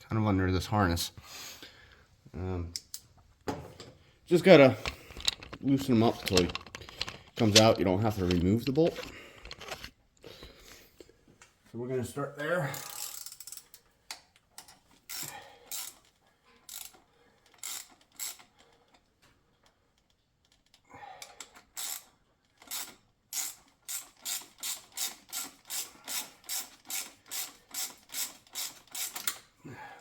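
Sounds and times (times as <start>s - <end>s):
hand ratchet clicking: 12.7s - 19.1s, 20.0s - 29.5s.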